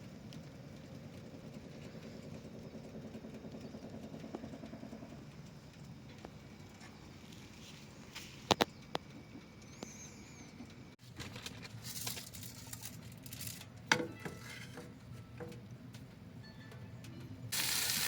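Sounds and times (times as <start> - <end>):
engine running: 0.0 - 11.0, 17.3 - 18.0.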